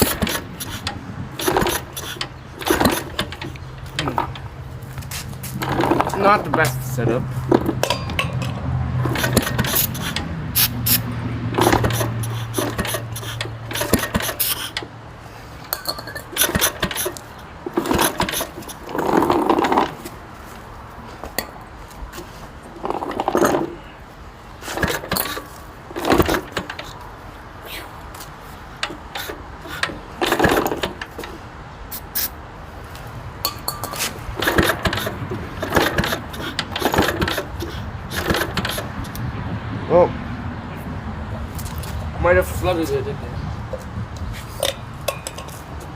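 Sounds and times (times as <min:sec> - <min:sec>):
metal clinks and scrapes of tools: 0:07.5 - 0:11.0, 0:15.6 - 0:20.1, 0:33.4 - 0:38.9, 0:43.7 - 0:45.9.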